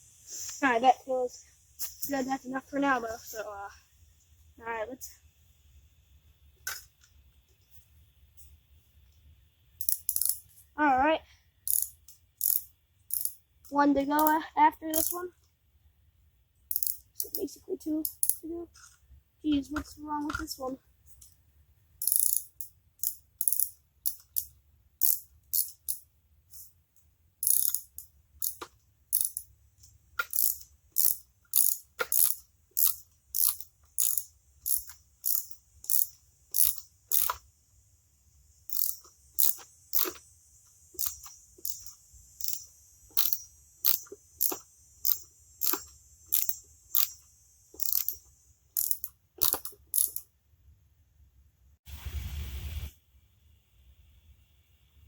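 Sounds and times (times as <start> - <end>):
ratchet wrench clicking: 9.8 - 10.6, 11.6 - 13.5, 14.1 - 15.2, 16.7 - 19.0, 22.0 - 26.8, 27.4 - 37.5, 38.6 - 50.3.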